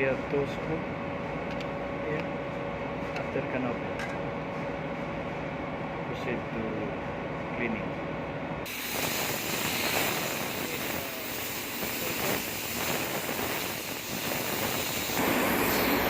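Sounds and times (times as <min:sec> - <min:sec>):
compressed air hissing: 0:08.6 - 0:16.0.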